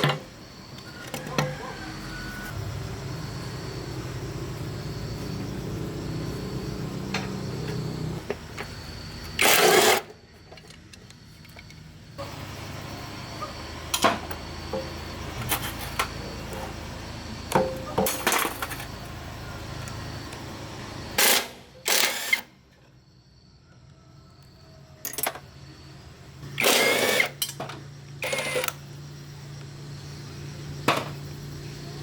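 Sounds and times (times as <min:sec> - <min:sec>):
metal tools clattering: 0:17.6 - 0:18.9, 0:25.0 - 0:25.4.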